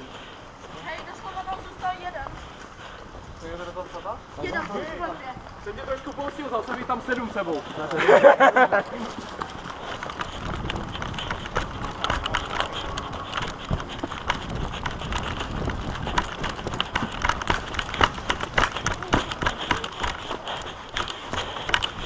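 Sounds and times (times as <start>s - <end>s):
running footsteps: 0.0s - 22.0s
gear knocking and rattling: 9.1s - 22.0s.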